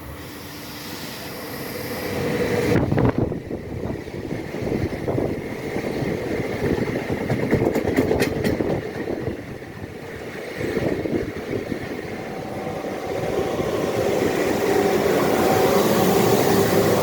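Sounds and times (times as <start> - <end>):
train wheels rumbling: 0.0 - 17.0
locomotive blower hum: 10.3 - 17.0.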